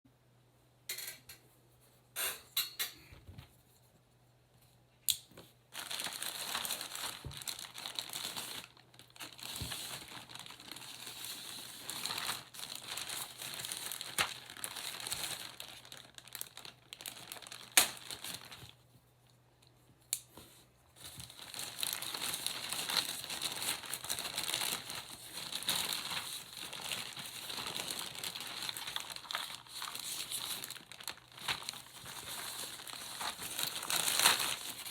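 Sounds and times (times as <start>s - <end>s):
plastic packaging crinkling: 5.7s - 18.9s, 21.0s - 34.9s.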